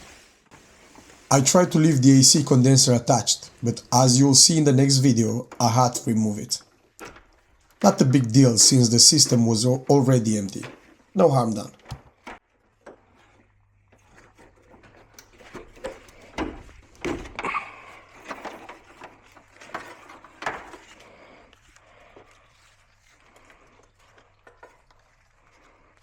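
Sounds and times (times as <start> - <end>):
car parts clattering: 14.1 - 21.0.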